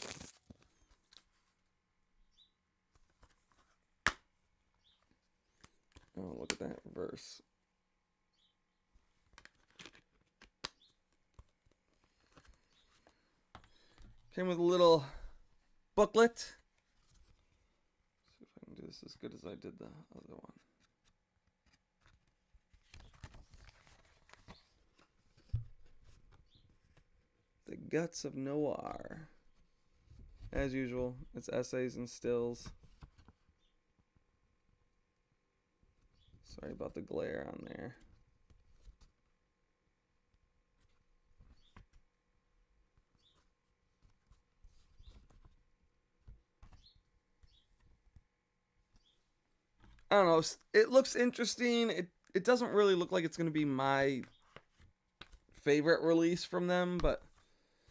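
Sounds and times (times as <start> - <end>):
booklet and disc case rustling: 0.0 - 1.6, 9.0 - 14.3, 16.6 - 17.8, 20.6 - 27.1, 43.0 - 48.3, 54.2 - 55.6
paper packaging rustling: 0.0 - 1.6.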